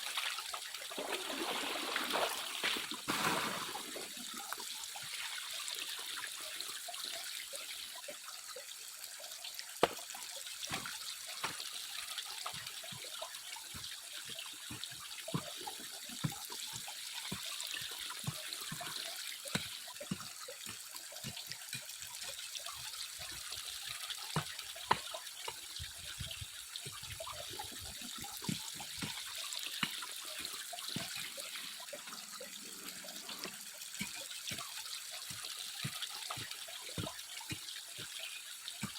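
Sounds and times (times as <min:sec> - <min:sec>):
water trickling and sloshing: 0:00.0 - 0:38.9
gravel and stones knocking: 0:09.8 - 0:10.0.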